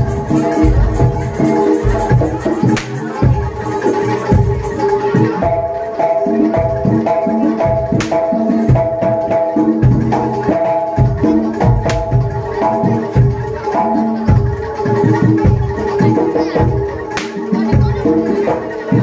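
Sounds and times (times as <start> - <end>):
low drum strokes: 0.0 - 4.8.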